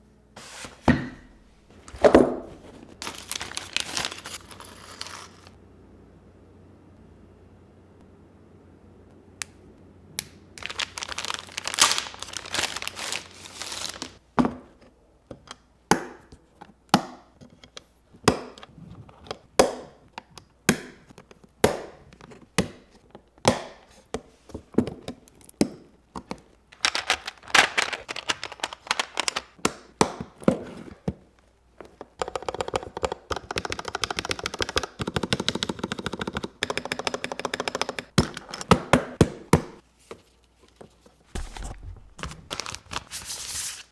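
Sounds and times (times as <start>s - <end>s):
mechanical keyboard clacking: 32.2s - 38.1s.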